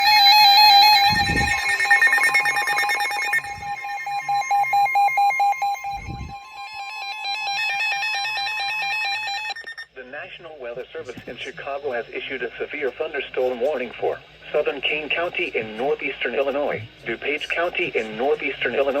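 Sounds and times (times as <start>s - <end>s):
weather radio alert alarms: 0.0s - 10.0s.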